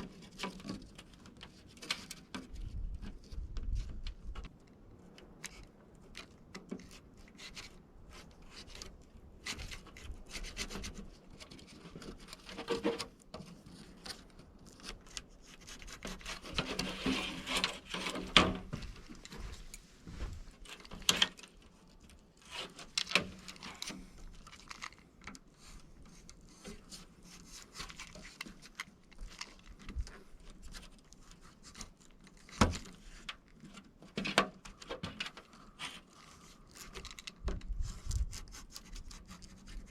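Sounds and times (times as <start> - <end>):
screen mesh scraping in frame: 16.0 - 21.6.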